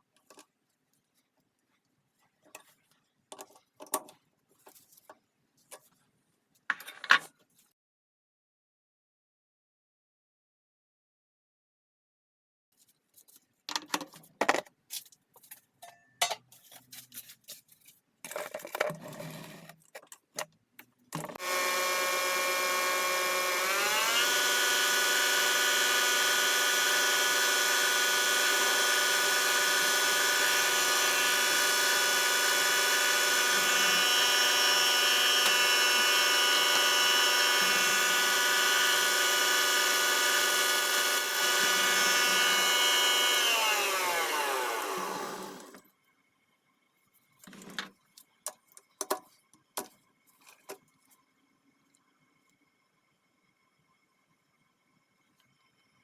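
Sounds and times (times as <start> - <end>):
lathe motor whine: 21.4 - 45.8.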